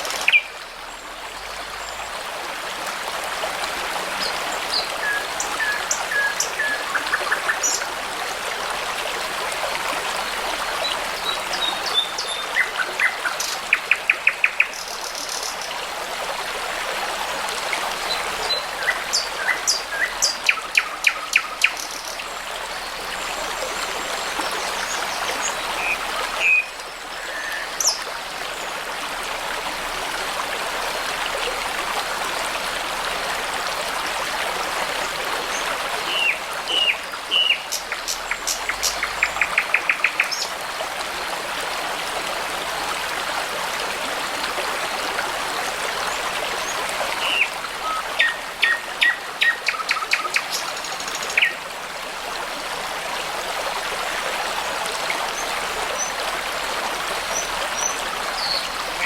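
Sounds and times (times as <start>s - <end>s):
brook babbling: 0.0s - 59.0s
songbirds singing: 10.8s - 15.8s, 18.0s - 28.8s, 35.5s - 40.6s, 46.0s - 51.6s, 57.3s - 59.0s.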